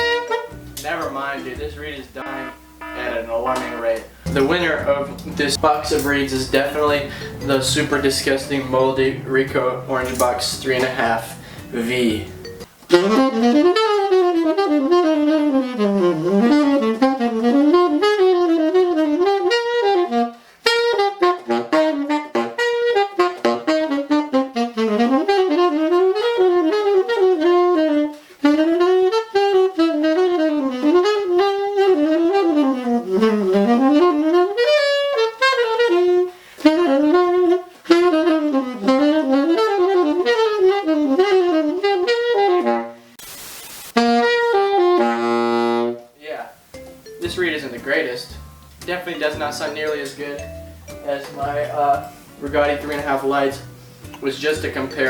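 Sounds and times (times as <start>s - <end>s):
solo saxophone playing jazz: 0.0s - 0.8s, 1.6s - 43.2s, 43.9s - 47.4s.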